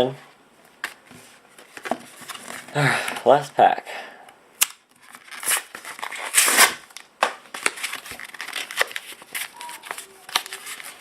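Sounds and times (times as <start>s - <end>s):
foil wrapper crinkling: 5.0s - 11.0s.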